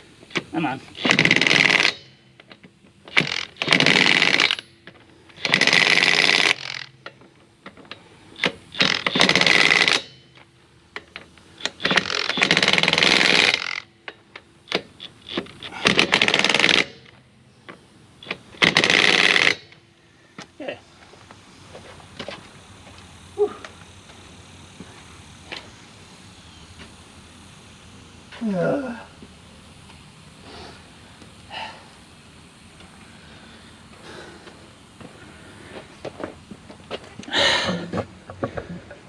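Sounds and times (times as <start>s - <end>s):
impact wrench hammering lug nuts: 0.3s - 17.2s, 18.2s - 19.8s.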